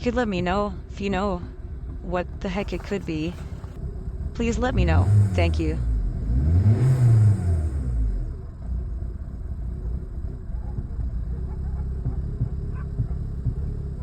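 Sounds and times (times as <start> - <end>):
engine rough idle: 1.7 - 6.3, 7.8 - 14.0.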